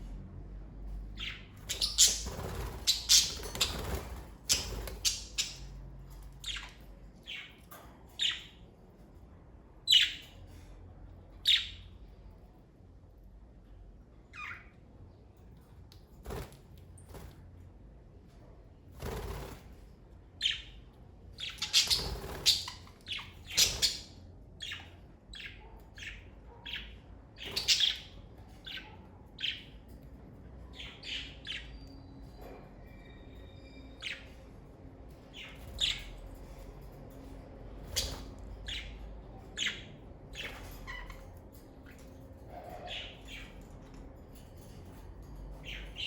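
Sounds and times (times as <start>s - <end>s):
budgerigars chirping: 1.2s - 5.7s, 21.4s - 29.7s.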